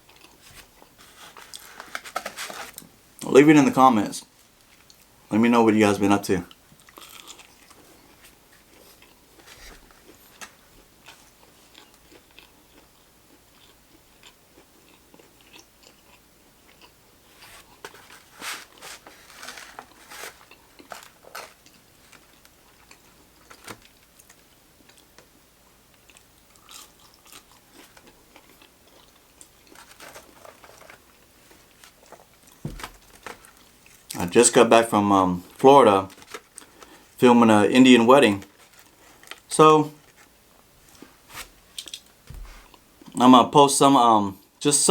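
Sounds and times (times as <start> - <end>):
person chewing crunchy food: 0.0 - 2.8, 6.5 - 34.2, 36.1 - 37.2, 38.4 - 40.3.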